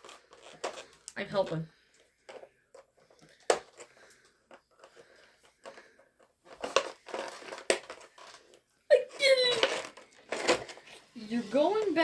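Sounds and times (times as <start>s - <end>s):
packaging rustling: 2.3s - 8.6s.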